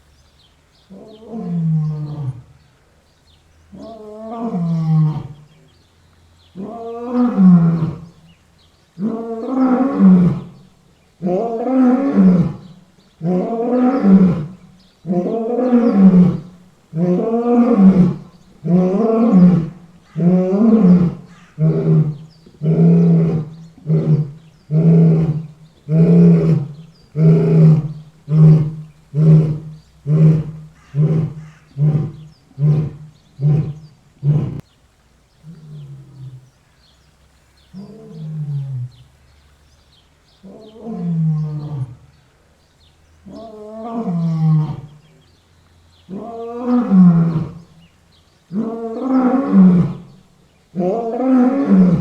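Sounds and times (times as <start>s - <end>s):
lion roaring: 11.2s - 34.6s, 50.8s - 52.0s.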